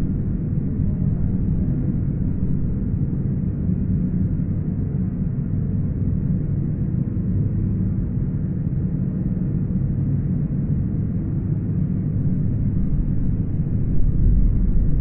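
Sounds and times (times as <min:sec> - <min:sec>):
deep engine-like drone: 0:00.0 - 0:15.0.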